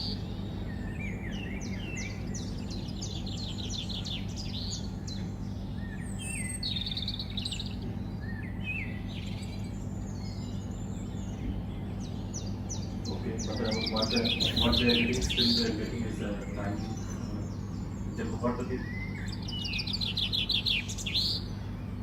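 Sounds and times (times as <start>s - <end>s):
small birds chirping: 0.0s - 22.0s
steady low hum: 7.7s - 19.5s.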